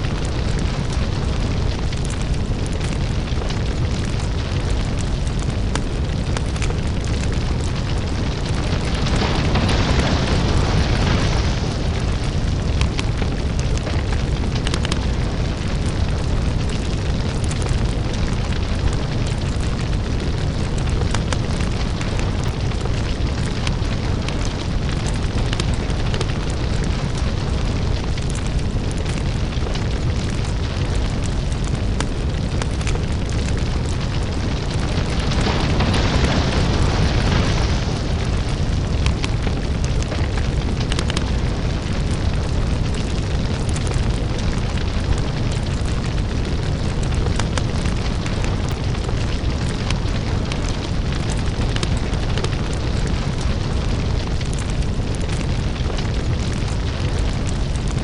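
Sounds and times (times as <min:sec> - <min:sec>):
deep steady rumble: 0:00.0 - 0:58.0
lava crackling and popping: 0:00.0 - 0:58.0.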